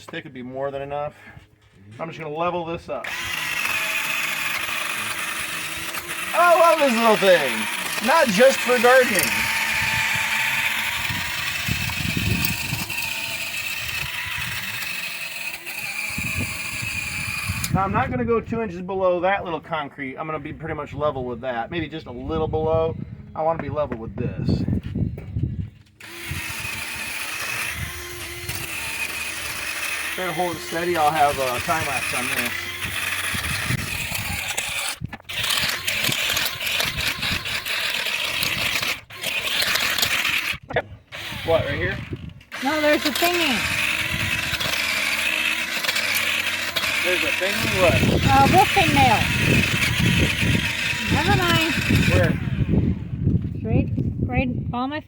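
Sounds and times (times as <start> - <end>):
garden tiller churning soil: 0.0 - 18.2, 25.4 - 53.2.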